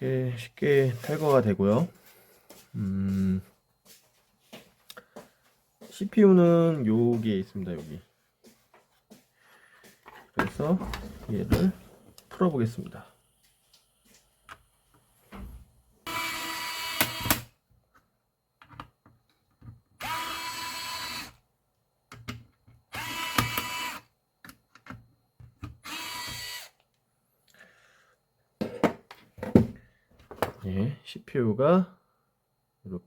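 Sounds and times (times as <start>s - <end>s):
electric screwdriver whirring: 16.0s - 17.5s, 20.0s - 21.4s, 22.9s - 24.1s, 25.8s - 26.8s.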